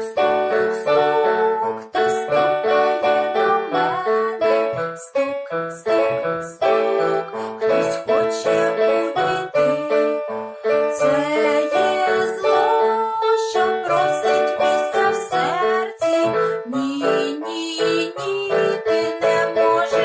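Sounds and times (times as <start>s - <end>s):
electric keyboard melody: 0.0s - 20.0s.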